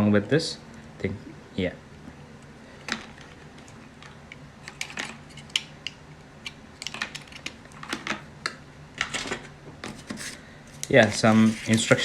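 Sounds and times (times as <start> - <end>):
cardboard and paper rustling: 9.8 - 12.0.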